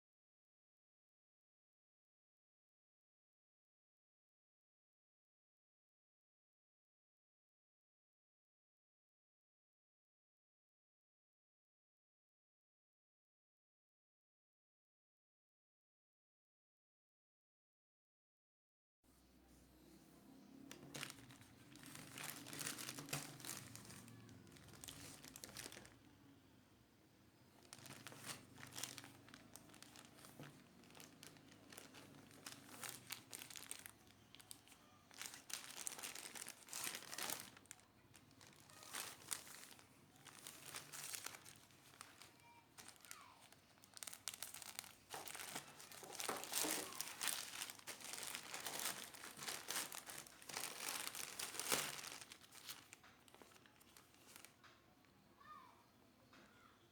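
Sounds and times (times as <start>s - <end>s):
packaging crinkling and tearing: 20.7s - 26.0s, 27.6s - 54.6s.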